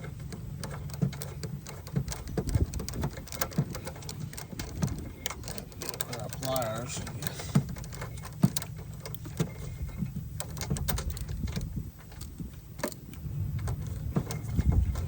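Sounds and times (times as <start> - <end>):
hand tools clinking on metal: 5.8 - 8.1.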